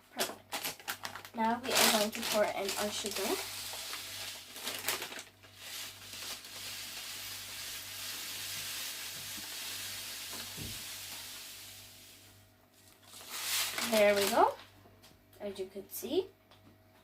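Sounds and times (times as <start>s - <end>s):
sugar pouring into a cup: 1.8s - 12.4s, 13.1s - 14.4s.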